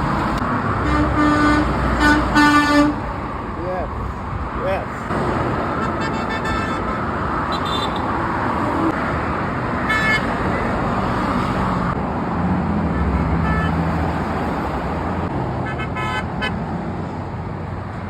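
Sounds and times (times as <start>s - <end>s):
road traffic passing: 0.0s - 18.0s
car horns tooting: 0.8s - 3.0s, 5.7s - 8.3s, 13.0s - 13.8s, 15.6s - 16.6s.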